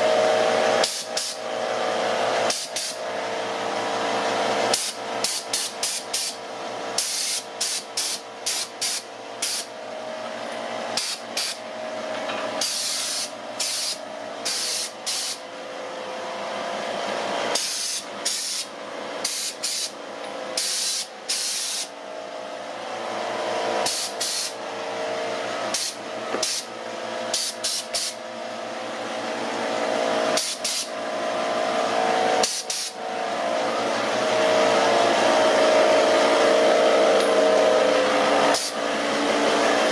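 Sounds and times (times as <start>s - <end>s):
electric air compressor running: 0.0s - 39.9s
short bursts of hiss: 12.6s - 15.4s, 17.6s - 19.9s, 20.6s - 21.9s, 23.8s - 24.5s, 30.4s - 30.9s, 32.4s - 32.9s.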